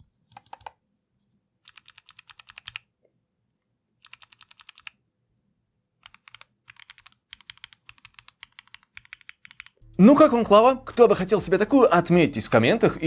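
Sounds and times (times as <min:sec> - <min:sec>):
clicky mechanical keyboard typing: 0:00.3 - 0:00.8, 0:01.6 - 0:02.9, 0:04.0 - 0:05.0, 0:06.0 - 0:09.8.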